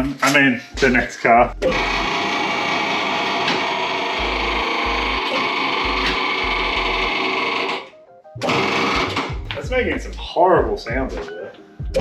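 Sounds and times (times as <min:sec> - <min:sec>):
harsh mechanical whirr of machine: 0:01.6 - 0:09.4.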